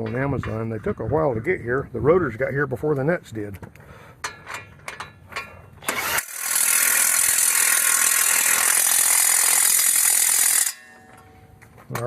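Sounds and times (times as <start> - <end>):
cordless impact wrench hammering: 4.2 - 11.4.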